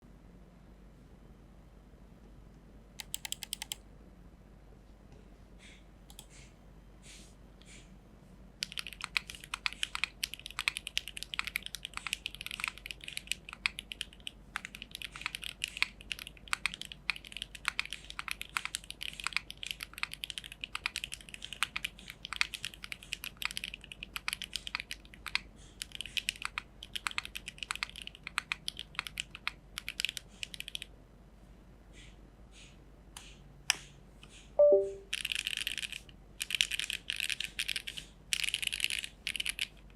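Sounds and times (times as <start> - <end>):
mechanical keyboard typing: 3.0 - 3.8, 8.6 - 30.9, 34.6 - 39.9.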